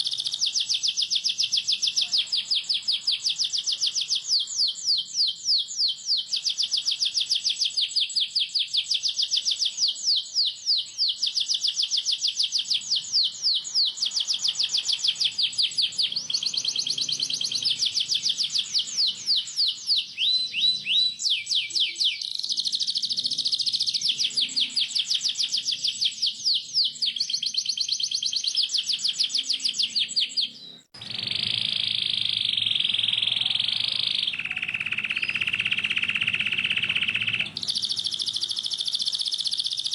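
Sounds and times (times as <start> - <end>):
canary singing: 0.0 - 39.9
buzzing bird trill: 12.2 - 26.3, 27.2 - 39.9.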